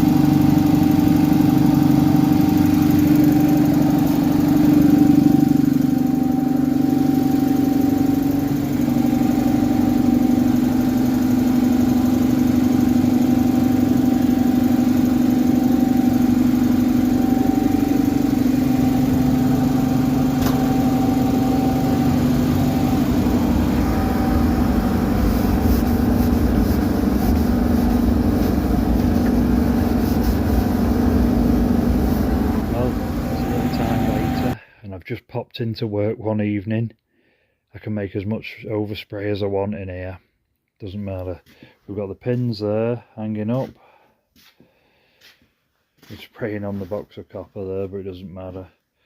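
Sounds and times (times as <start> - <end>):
stationary diesel engine running: 0.0 - 34.6.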